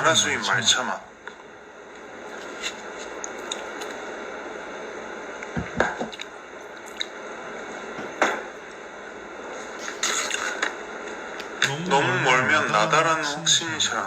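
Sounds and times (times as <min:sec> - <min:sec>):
wet mouth eating noises: 0:02.3 - 0:04.0, 0:06.0 - 0:07.4, 0:09.8 - 0:10.7.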